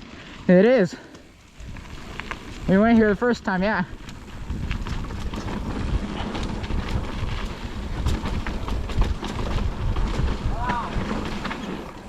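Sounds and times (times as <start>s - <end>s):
wind buffeting microphone: 1.4s - 12.0s
bike rattles and knocks: 3.9s - 12.0s.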